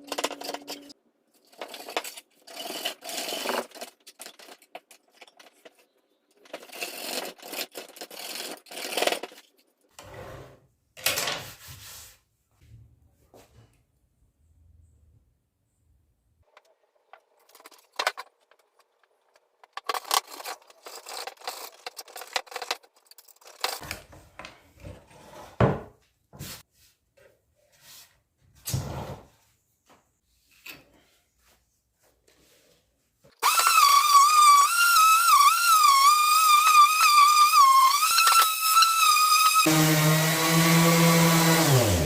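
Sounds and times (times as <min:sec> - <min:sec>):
wood and tools scraping and knocking: 0:00.0 - 0:13.8, 0:16.4 - 0:33.6.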